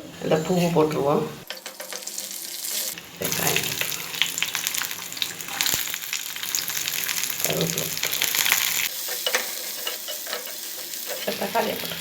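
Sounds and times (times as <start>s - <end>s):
spoon stirring in pan: 1.4s - 3.2s, 8.0s - 12.0s
onion sizzling in hot oil: 1.4s - 12.0s.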